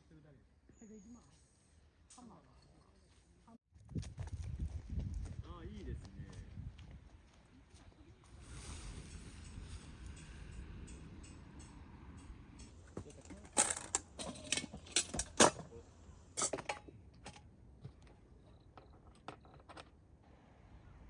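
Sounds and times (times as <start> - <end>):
metallic clinks of camping gear: 9.4 - 15.8, 16.4 - 19.7.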